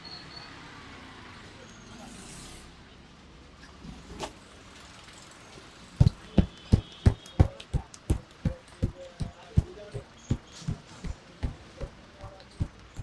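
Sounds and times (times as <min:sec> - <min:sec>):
hands thumping on body: 0:06.0 - 0:13.0.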